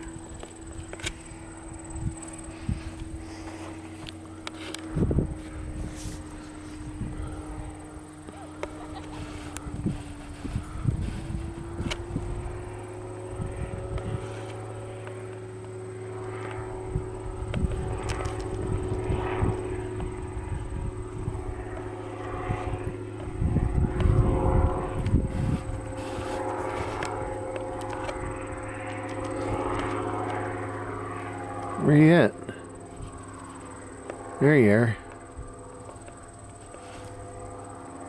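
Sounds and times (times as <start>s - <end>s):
wind buffeting microphone: 0.0s - 14.5s, 16.6s - 30.6s
light aircraft engine droning: 0.0s - 38.0s.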